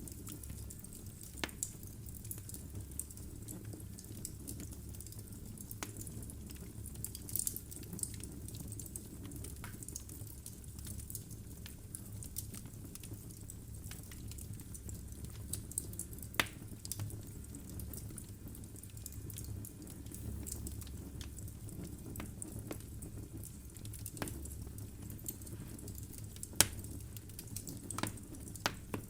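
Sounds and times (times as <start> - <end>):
firewood crackling and popping: 0.0 - 29.0
low rumble of flames: 0.0 - 29.0.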